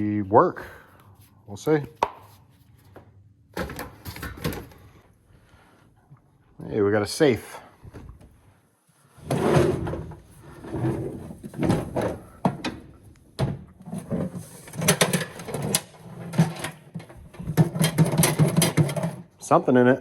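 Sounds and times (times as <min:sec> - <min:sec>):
metal safe knocking and clunking: 0:11.5 - 0:19.2.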